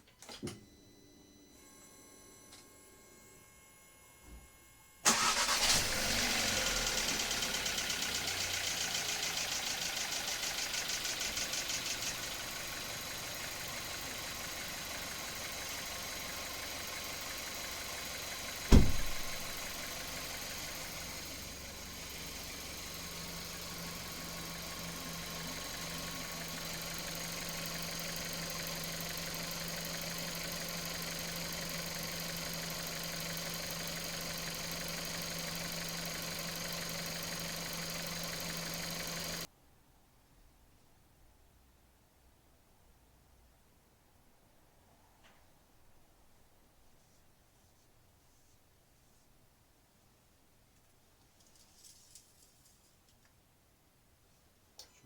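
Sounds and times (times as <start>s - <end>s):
car engine idling: 5.0s - 39.5s
loud thump: 18.7s - 19.5s.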